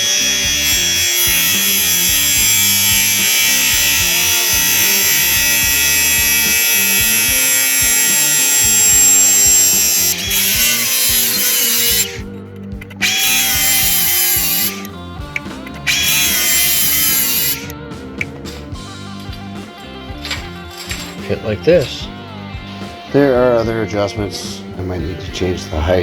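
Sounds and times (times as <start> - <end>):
power tool whirring on metal: 0.0 - 17.8, 18.7 - 23.3
background music with bass: 0.0 - 26.0.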